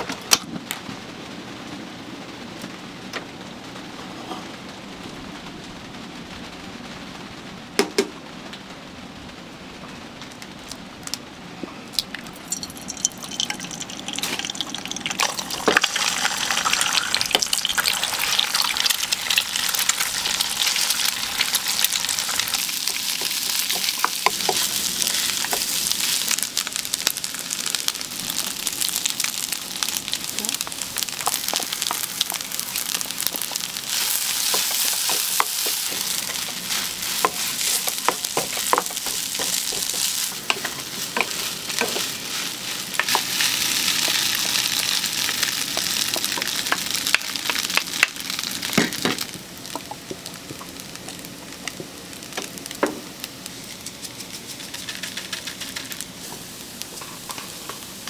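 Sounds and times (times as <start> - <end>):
food sizzling in a pan: 12.3 - 58.0.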